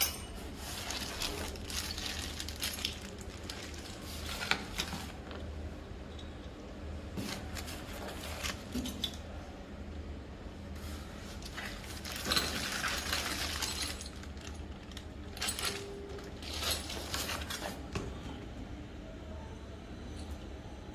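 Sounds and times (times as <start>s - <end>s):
clinks and knocks of hard parts: 0.0s - 0.4s
steady low hum: 0.0s - 20.9s
rustling: 0.3s - 5.4s.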